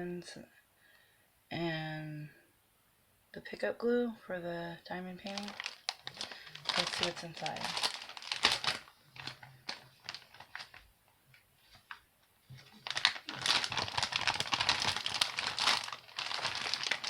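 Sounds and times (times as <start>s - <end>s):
packaging crinkling: 5.2s - 10.9s, 11.6s - 17.0s
packaging clicks: 12.8s - 17.0s.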